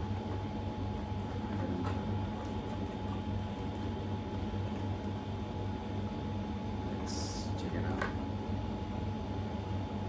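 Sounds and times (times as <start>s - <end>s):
low mechanical room hum: 0.0s - 10.0s.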